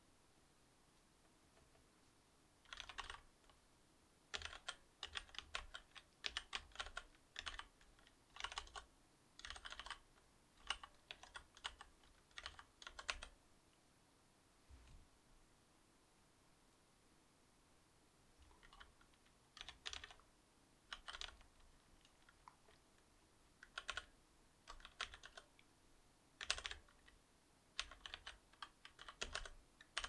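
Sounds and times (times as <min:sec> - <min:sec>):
mechanical keyboard typing: 0:02.6 - 0:03.6, 0:04.3 - 0:13.4, 0:18.4 - 0:20.2, 0:20.9 - 0:22.8, 0:23.6 - 0:25.6, 0:26.4 - 0:30.0.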